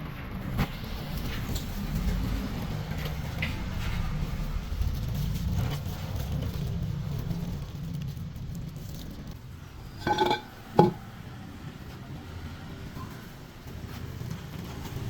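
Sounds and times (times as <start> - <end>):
sharp clicks and knocks: 10.0 - 11.0.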